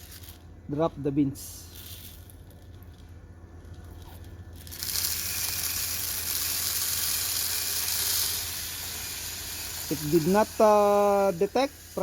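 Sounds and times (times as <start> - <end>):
low steady hum: 0.0 - 12.0
coffee beans pouring into drum: 4.6 - 12.0.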